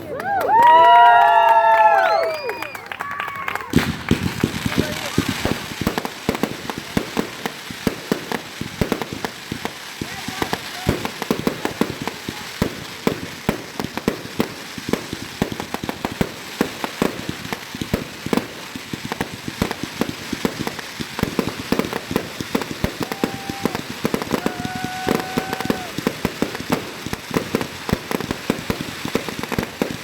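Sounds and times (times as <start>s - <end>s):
fireworks bangs and crackles: 0.0s - 30.0s.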